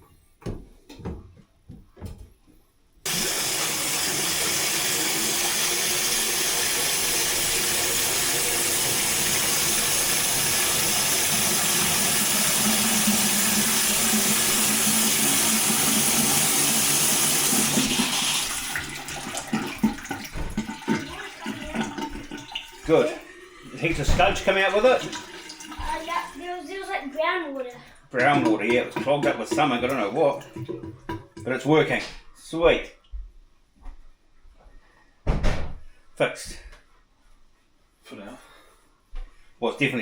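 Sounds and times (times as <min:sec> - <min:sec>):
water rushing in a sink: 0:03.1 - 0:32.0.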